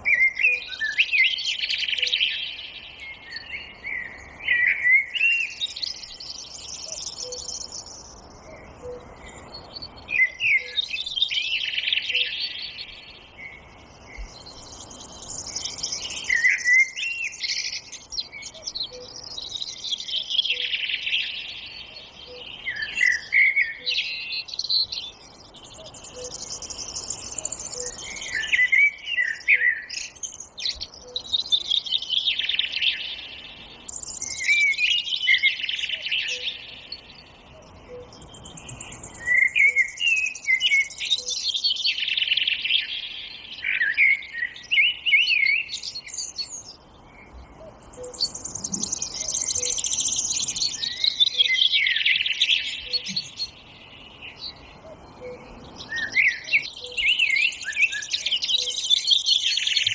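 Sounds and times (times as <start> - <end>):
songbirds chirping and trilling: 0.0 - 59.9.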